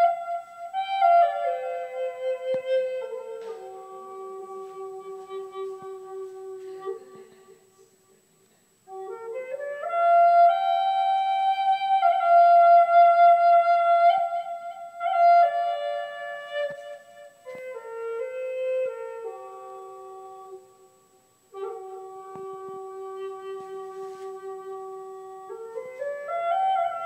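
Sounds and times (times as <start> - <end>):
flute-like wind instrument melody: 0.0 - 7.9, 8.9 - 27.0.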